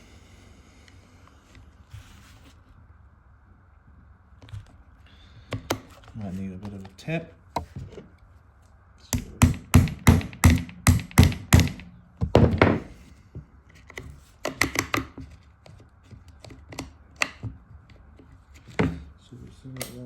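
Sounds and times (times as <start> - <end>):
hammer tapping metal pin: 9.2 - 11.9.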